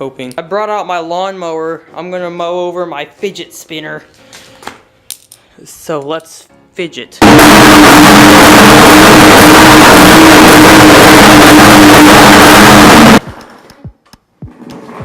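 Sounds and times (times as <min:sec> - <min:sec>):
lawnmower engine running: 0:07.2 - 0:13.2.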